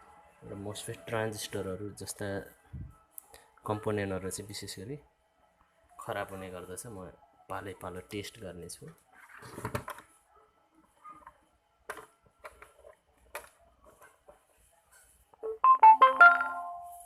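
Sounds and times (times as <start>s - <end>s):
electronic beep tones: 15.4s - 17.0s.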